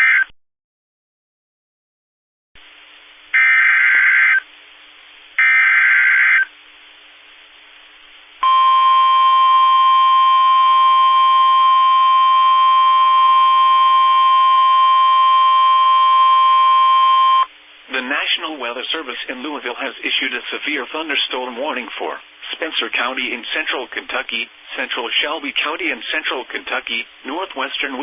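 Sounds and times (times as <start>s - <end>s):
steady warning alarm tone: 3.4s - 4.4s, 5.4s - 6.5s, 8.4s - 17.5s.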